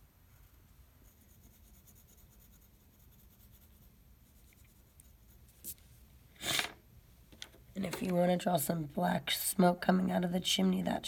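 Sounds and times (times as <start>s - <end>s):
drawing tool scratching on paper: 0.4s - 5.5s.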